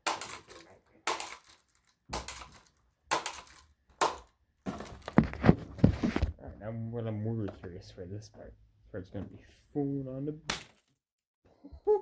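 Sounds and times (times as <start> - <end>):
rattling and knocking: 4.7 - 6.3.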